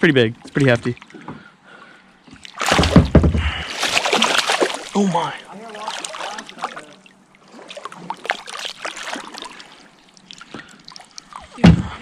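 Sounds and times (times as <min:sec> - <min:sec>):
small splashes: 0:02.3 - 0:12.0
loud thump: 0:02.7 - 0:03.6
water trickling and dripping: 0:03.8 - 0:12.0.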